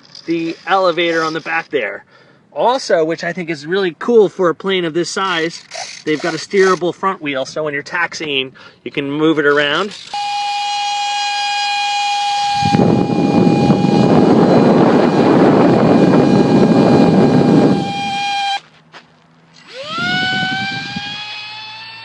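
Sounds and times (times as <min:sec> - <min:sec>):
electric ducted fan whining: 0:09.6 - 0:18.8, 0:19.4 - 0:22.0.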